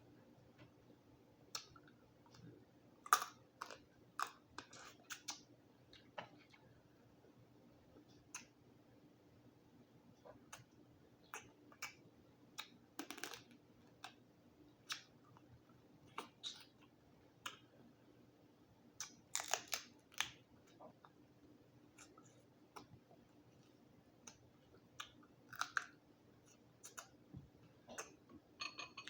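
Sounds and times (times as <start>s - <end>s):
crab shell cracking: 19.0s - 20.4s, 25.0s - 26.0s.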